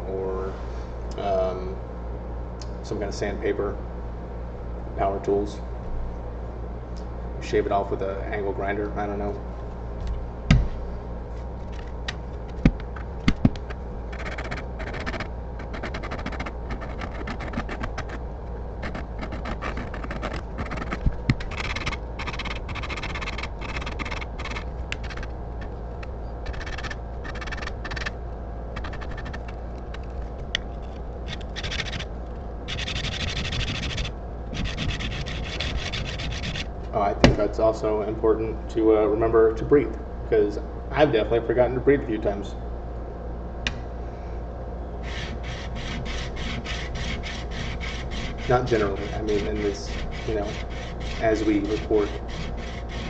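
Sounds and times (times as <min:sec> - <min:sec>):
blade rubbing on sharpening plate: 0:14.1 - 0:18.2, 0:18.8 - 0:25.3, 0:26.4 - 0:28.1, 0:31.3 - 0:32.1, 0:32.7 - 0:36.7, 0:45.0 - 0:53.0.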